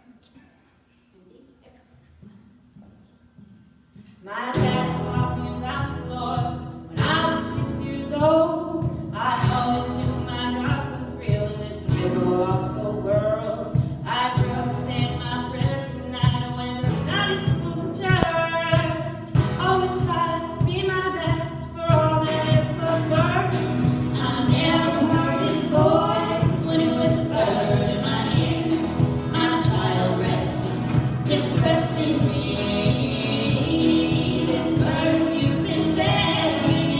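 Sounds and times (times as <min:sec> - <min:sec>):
musical backing with a beat: 0:15.6 - 0:36.9
voices singing in harmony: 0:22.2 - 0:36.9.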